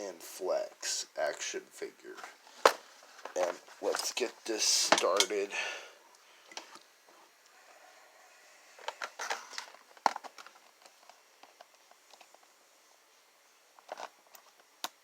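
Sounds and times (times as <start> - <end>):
plastic and cardboard crinkling: 8.8 - 12.5, 13.8 - 14.6.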